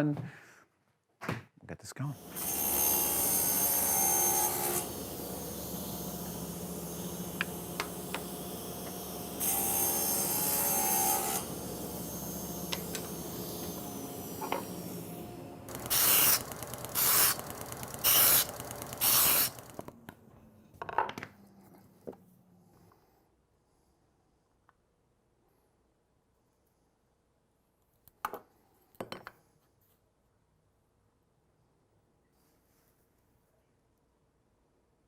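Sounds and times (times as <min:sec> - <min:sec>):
machine humming: 0:02.2 - 0:19.9
loud hissing bursts: 0:11.5 - 0:19.8.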